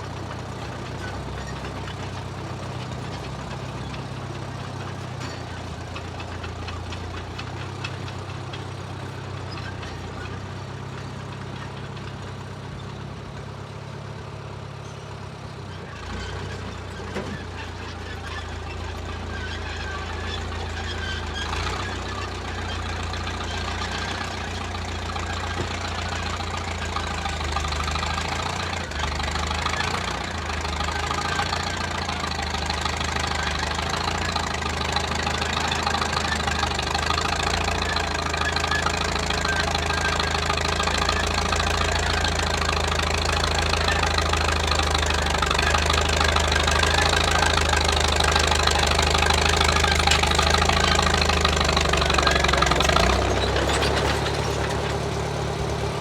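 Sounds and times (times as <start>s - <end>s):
bulldozer engine running: 0.0s - 56.0s.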